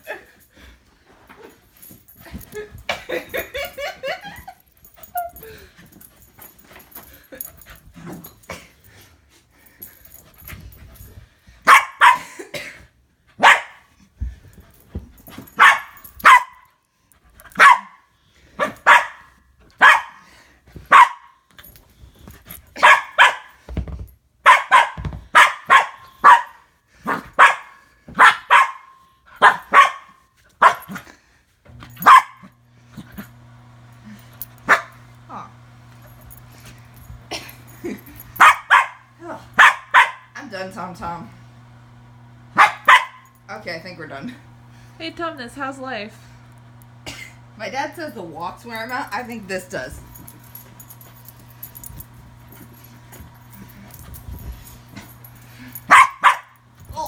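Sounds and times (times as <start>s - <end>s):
dog barking excitedly: 11.6s - 12.4s, 13.4s - 13.9s, 15.5s - 16.6s, 17.4s - 20.2s, 20.8s - 21.4s, 22.8s - 23.6s, 24.4s - 31.0s, 32.0s - 32.5s, 34.6s - 35.0s, 38.4s - 40.4s, 42.6s - 43.3s, 55.8s - 57.0s
steady low hum: 31.7s - 39.6s, 40.2s - 57.0s.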